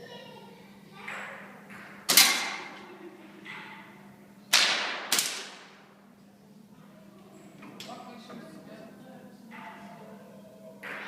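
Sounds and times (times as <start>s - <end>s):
air rifle shots: 4.5s - 5.8s.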